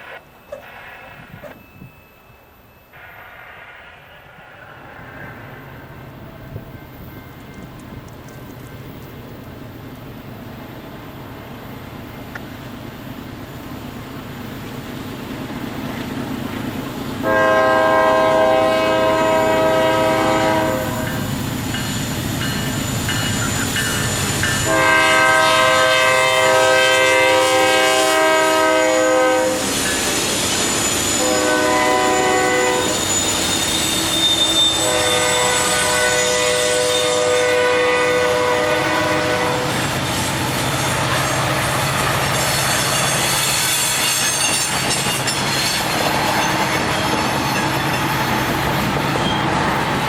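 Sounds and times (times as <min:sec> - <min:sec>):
locomotive rumbling: 0:03.7 - 0:50.0
multi-chime air horn blasts: 0:17.2 - 0:21.2, 0:23.8 - 0:39.8.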